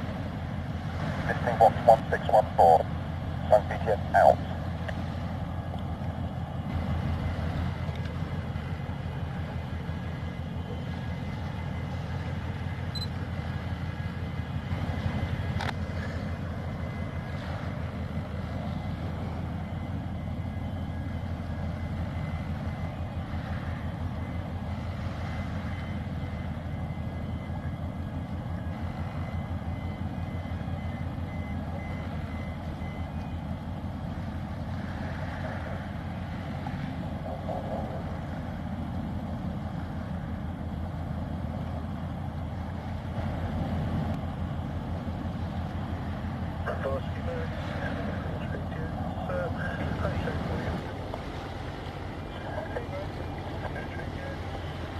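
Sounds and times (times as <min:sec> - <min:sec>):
heavy engines rumbling: 0:00.0 - 0:54.9
reversing alarm beeping: 0:08.6 - 0:15.4, 0:16.6 - 0:34.1.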